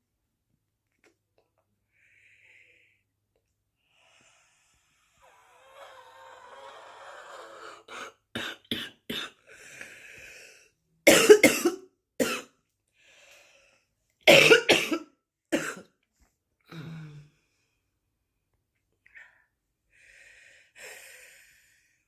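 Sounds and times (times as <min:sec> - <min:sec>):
woman coughing: 0:11.1 - 0:12.5, 0:14.3 - 0:15.9.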